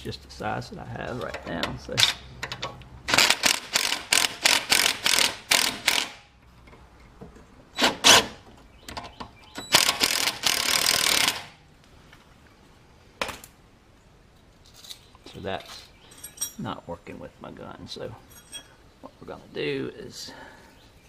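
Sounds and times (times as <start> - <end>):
power wrench bursts: 3.1 - 6.3, 7.8 - 8.4, 9.6 - 11.6.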